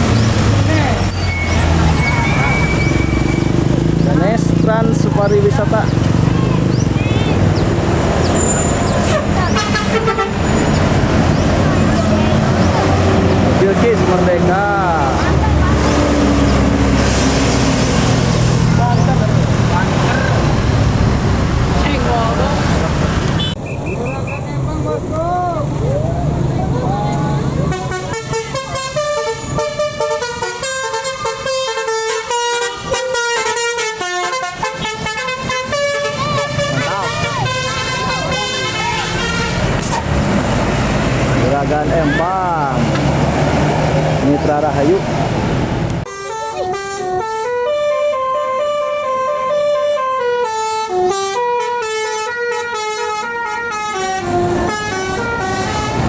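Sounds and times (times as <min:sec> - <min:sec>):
passing vehicle noise: 0:00.0 - 0:46.2, 0:52.2 - 0:56.0
bus musical horn melody: 0:08.2 - 0:11.0, 0:27.6 - 0:40.0, 0:46.1 - 0:56.0.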